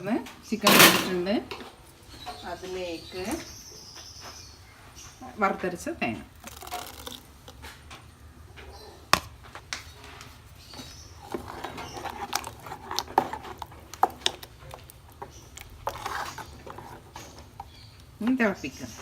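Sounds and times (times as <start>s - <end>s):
spoon scraping cooking pot: 9.0s - 19.0s.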